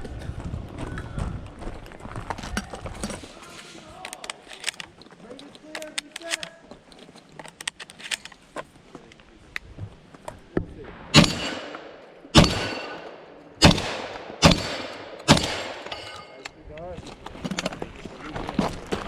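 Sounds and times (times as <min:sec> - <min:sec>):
shotgun blasts with echo: 0:10.8 - 0:16.0.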